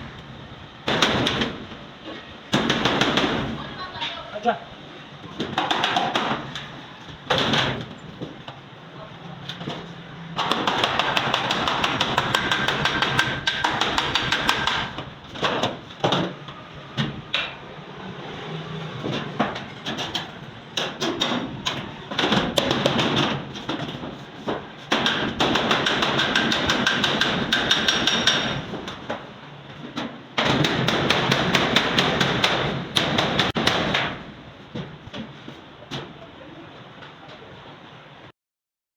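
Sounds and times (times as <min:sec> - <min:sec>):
hammer beating on sheet steel: 0:00.8 - 0:01.6, 0:02.5 - 0:03.5, 0:10.4 - 0:16.3, 0:19.4 - 0:29.2, 0:30.0 - 0:34.3.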